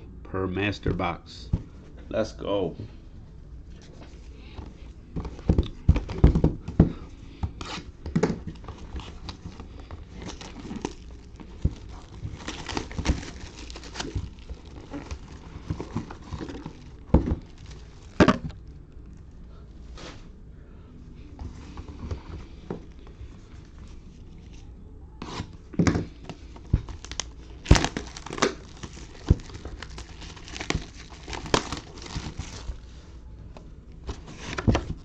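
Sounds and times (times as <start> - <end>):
wrapping crinkling and tearing: 7.6 - 19.2, 26.2 - 32.9.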